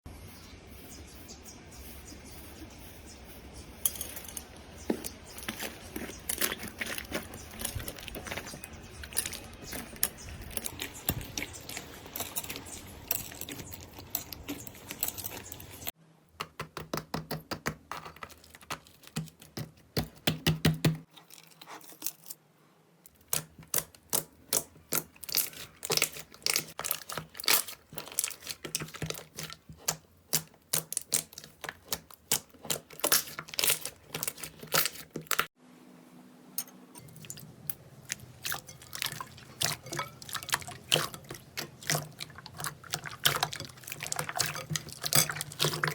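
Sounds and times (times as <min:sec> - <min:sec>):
slime crackling and popping: 0:23.2 - 0:35.5.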